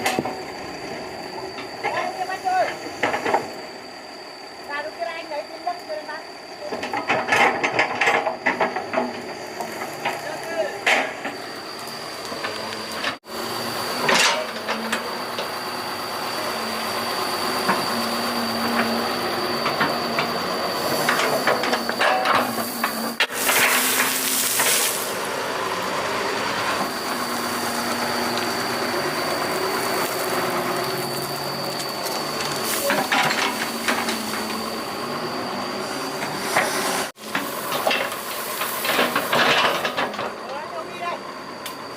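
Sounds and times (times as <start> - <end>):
excavator engine running: 0.0 - 41.9
thin high whine: 0.0 - 41.9
rush of hissing: 8.4 - 40.1.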